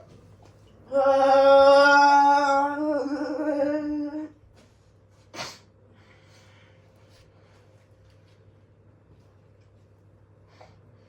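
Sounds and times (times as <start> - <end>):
person humming a long note: 0.9 - 4.4.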